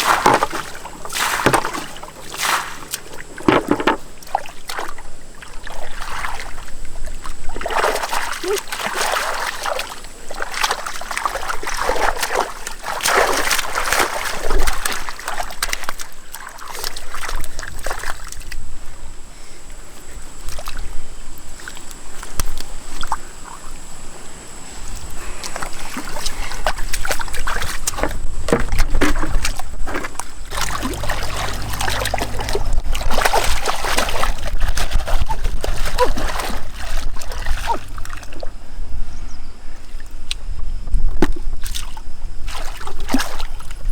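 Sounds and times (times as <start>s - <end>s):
water splashing and sloshing: 0.0s - 19.0s, 24.8s - 39.0s, 41.1s - 43.9s
low rumble: 30.5s - 33.4s.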